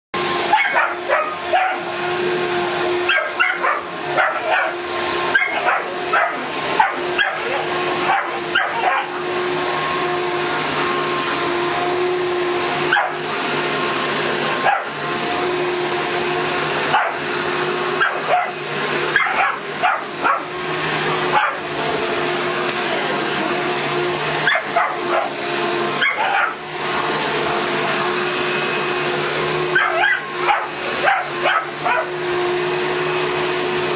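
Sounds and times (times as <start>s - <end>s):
vacuum cleaner humming: 0.2s - 33.9s
dog barking and yipping: 0.4s - 2.0s, 3.0s - 9.3s, 12.8s - 13.3s, 14.6s - 15.0s, 16.9s - 17.3s, 18.0s - 20.6s, 21.2s - 21.7s, 24.4s - 27.0s, 29.7s - 32.2s.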